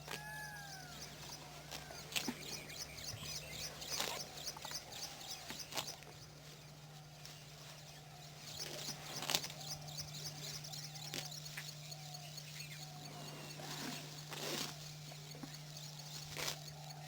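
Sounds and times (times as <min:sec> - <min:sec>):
whistled bird calls: 0:00.0 - 0:05.9
birds chirping: 0:00.0 - 0:17.0
steady low hum: 0:00.0 - 0:17.0.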